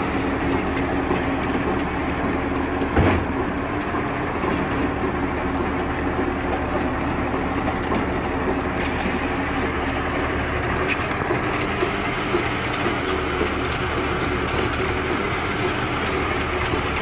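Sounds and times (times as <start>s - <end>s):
machinery clicks: 0.0s - 17.0s
tractor engine running: 0.0s - 17.0s
loud thump: 3.0s - 3.3s.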